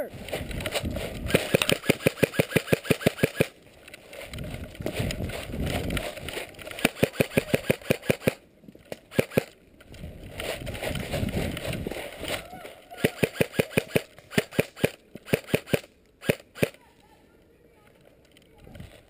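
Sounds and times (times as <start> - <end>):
airsoft gun firing: 1.0 - 3.6, 6.0 - 8.4, 9.1 - 9.6, 13.0 - 16.8.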